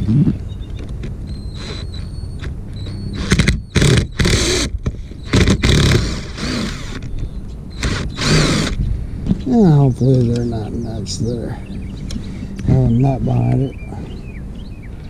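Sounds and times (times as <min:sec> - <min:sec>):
motorized hand tool on bolts: 0:01.5 - 0:08.8.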